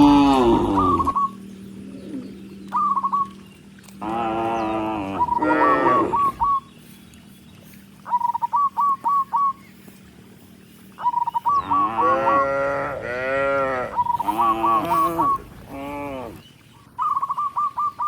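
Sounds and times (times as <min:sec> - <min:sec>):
cows mooing: 0:00.0 - 0:03.1, 0:03.9 - 0:06.6, 0:11.4 - 0:16.6
bird whistling calls: 0:00.4 - 0:03.7, 0:04.6 - 0:07.0, 0:08.0 - 0:09.9, 0:10.9 - 0:12.4, 0:13.9 - 0:15.6, 0:16.4 - 0:18.0.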